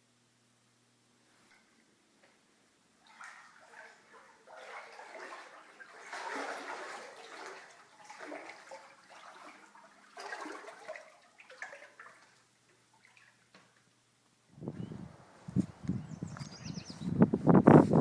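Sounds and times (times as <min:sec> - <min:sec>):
floodwater rushing and sloshing: 0:03.0 - 0:12.4.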